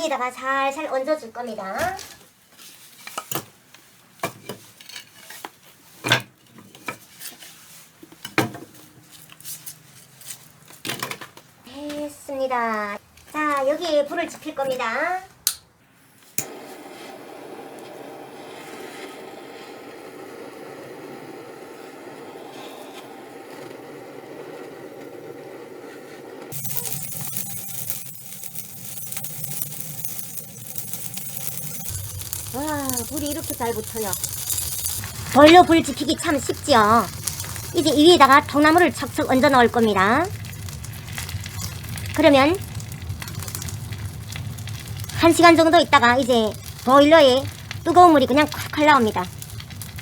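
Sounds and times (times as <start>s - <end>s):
fire crackling: 16.4s - 50.0s
low rumble of firebox: 28.4s - 50.0s.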